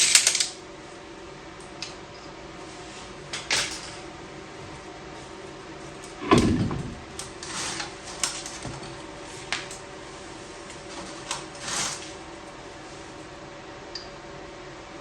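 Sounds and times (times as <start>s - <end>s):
space heater humming: 0.0s - 15.0s
heavy thump: 6.2s - 7.2s.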